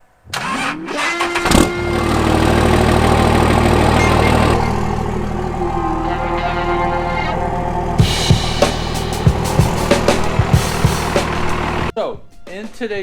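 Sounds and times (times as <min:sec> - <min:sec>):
engine cranking and running: 0:01.5 - 0:05.6, 0:07.9 - 0:11.9.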